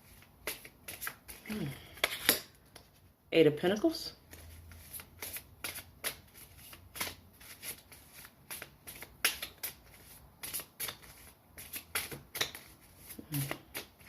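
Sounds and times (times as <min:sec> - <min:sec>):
cards shuffled snapping: 0:00.4 - 0:02.9, 0:04.3 - 0:14.0.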